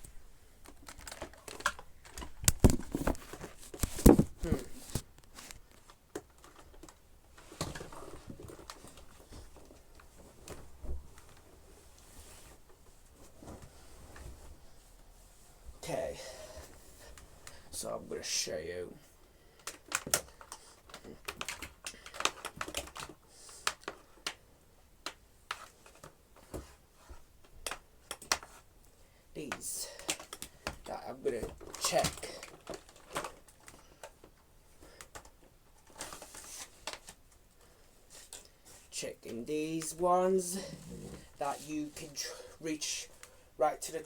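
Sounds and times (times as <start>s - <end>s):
plastic parts clicking and tapping: 0.0s - 9.1s, 19.6s - 24.4s, 27.4s - 28.6s, 29.5s - 37.5s.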